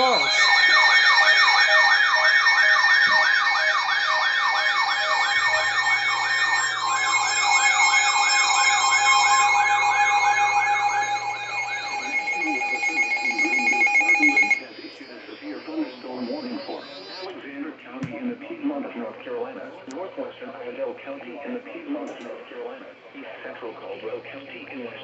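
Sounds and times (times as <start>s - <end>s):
short repeating beep: 0.0s - 0.7s
siren-like alarm warble: 0.0s - 17.3s
steady alarm tones: 0.0s - 17.3s.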